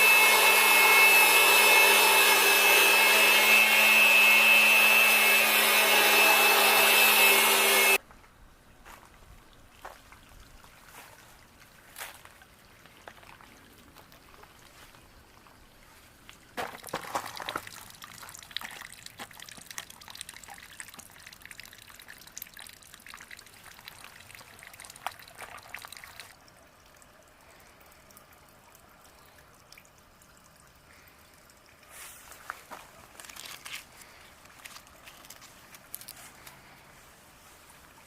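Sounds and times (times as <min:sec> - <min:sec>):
faint water trickle: 0:08.8 - 0:16.6, 0:17.2 - 0:38.0
water dripping and crackling: 0:09.0 - 0:38.0
water pouring and splashing: 0:09.2 - 0:38.0.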